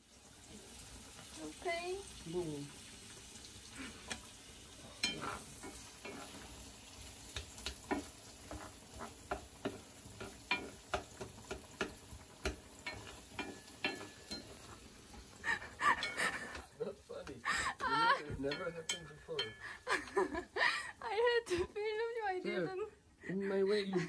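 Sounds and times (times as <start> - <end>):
faint sizzling hiss of cooking: 0.0 - 24.0
utensil clinking against cookware: 4.0 - 20.5.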